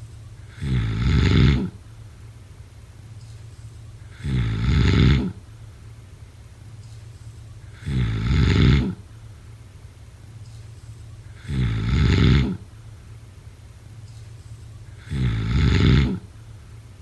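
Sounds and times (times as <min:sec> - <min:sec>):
steady low hum: 0:00.0 - 0:17.0
person snoring: 0:00.4 - 0:01.8, 0:04.1 - 0:05.4, 0:07.7 - 0:09.0, 0:11.3 - 0:12.7, 0:14.9 - 0:16.3.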